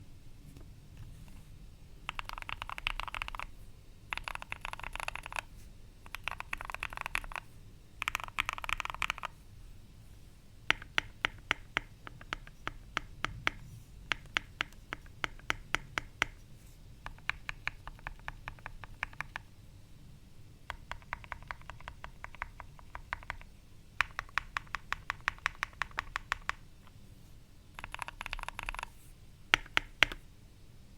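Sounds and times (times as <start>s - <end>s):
mechanical keyboard typing: 2.0s - 3.5s, 4.1s - 9.4s, 10.7s - 16.4s, 17.0s - 19.5s, 20.7s - 27.0s, 27.8s - 28.9s, 29.5s - 30.2s.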